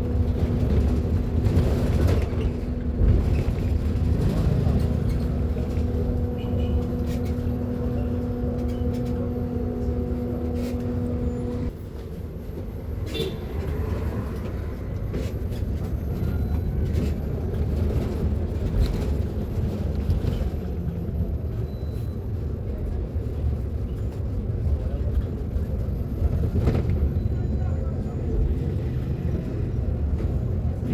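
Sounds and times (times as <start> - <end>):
low rumble: 0.0 - 11.7.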